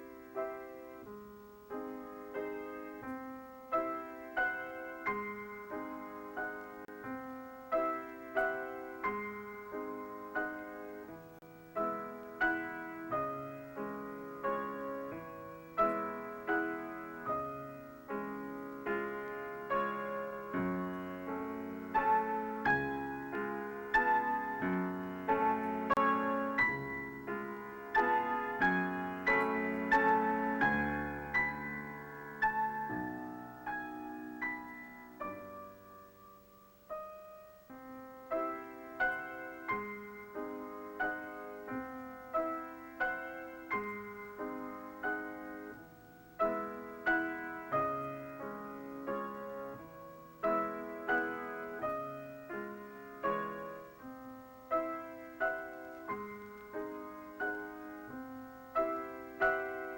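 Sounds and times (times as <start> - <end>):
solo piano music: 0.0 - 59.9.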